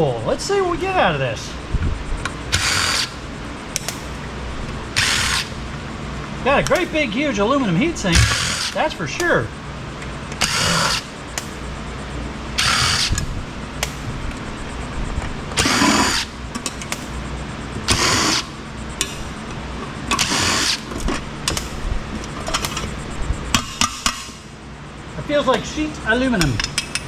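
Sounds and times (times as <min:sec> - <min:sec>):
power drill running: 0:02.4 - 0:03.2, 0:04.9 - 0:05.6, 0:08.1 - 0:08.8, 0:10.4 - 0:11.1, 0:12.5 - 0:13.2, 0:15.6 - 0:16.4, 0:17.9 - 0:18.6, 0:20.1 - 0:20.9.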